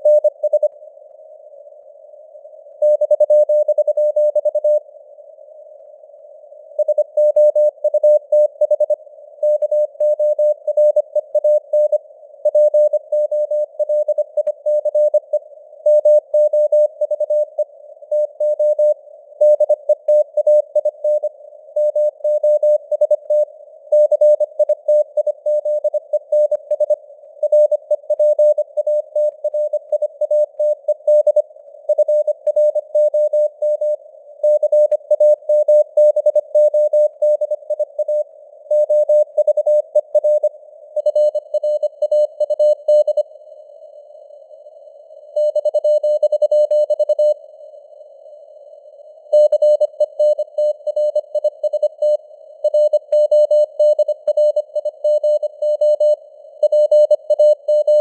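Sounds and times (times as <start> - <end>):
faint radio noise hiss: 0.0 - 16.0
morse code beeps: 38.8 - 43.2, 45.4 - 47.4, 49.4 - 58.0.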